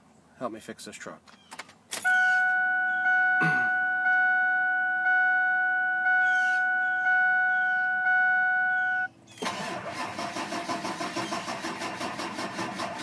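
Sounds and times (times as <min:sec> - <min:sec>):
dashboard warning chime: 0:02.0 - 0:09.1.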